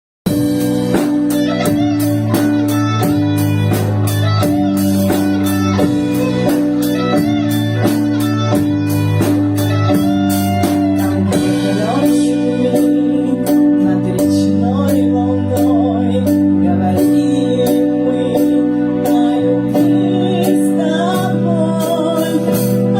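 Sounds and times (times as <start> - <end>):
drum beat: 0.2 - 12.3
bass line: 0.2 - 22.9
guitar melody: 0.3 - 22.9.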